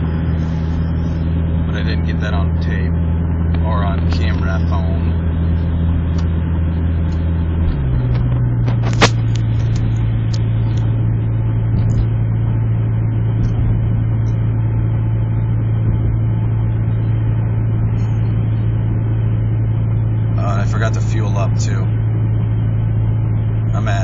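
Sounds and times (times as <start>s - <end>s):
car engine drone: 0.0s - 24.0s
road noise inside car: 0.0s - 24.0s
sharp click: 8.1s - 10.9s.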